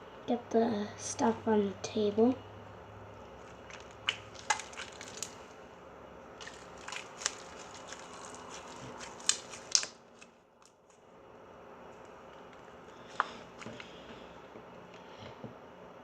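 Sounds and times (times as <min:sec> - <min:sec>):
slime crackling and popping: 0:03.4 - 0:05.5, 0:06.4 - 0:10.9.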